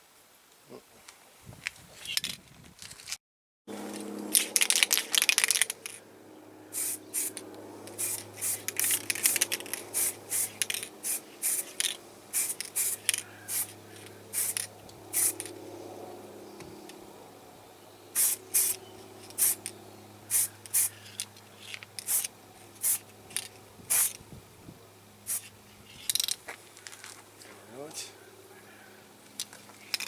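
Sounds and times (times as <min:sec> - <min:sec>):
steady low hum: 0:03.7 - 0:29.9
spray can hissing squirts: 0:06.8 - 0:13.8, 0:14.4 - 0:15.5, 0:18.2 - 0:19.6, 0:20.3 - 0:20.9, 0:22.0 - 0:23.0, 0:23.9 - 0:24.2, 0:25.3 - 0:25.5.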